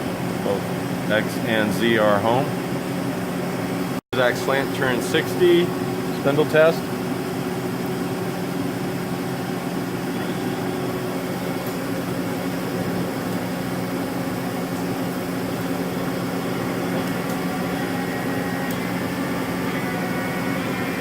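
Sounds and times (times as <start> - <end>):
lathe spindle humming: 4.5 - 21.0.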